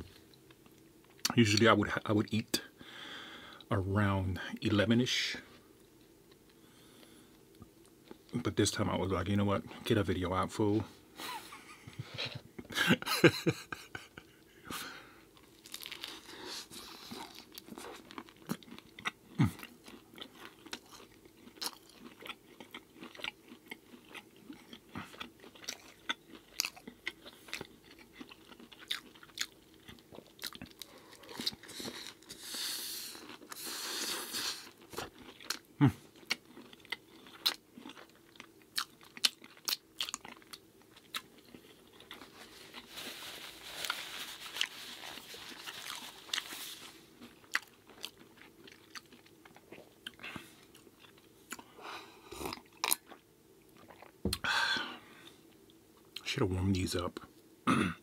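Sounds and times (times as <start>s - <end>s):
person chewing food: 15.3s - 56.2s.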